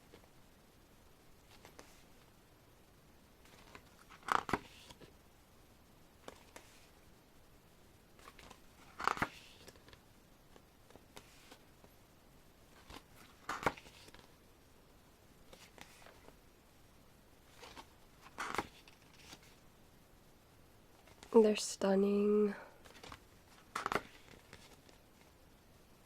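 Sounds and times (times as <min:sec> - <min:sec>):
pages turning: 0:01.5 - 0:02.2, 0:03.4 - 0:05.1, 0:06.2 - 0:07.0, 0:08.2 - 0:11.7, 0:12.7 - 0:14.3, 0:15.5 - 0:16.4, 0:17.5 - 0:19.6, 0:21.0 - 0:21.3, 0:22.8 - 0:25.3.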